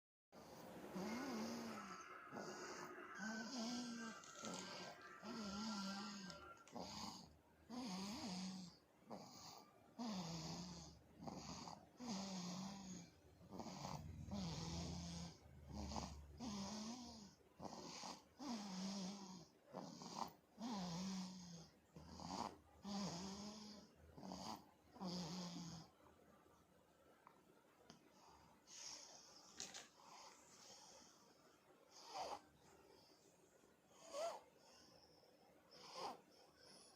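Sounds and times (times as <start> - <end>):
pet snoring: 0.4 - 25.9, 31.9 - 32.5, 35.7 - 36.9.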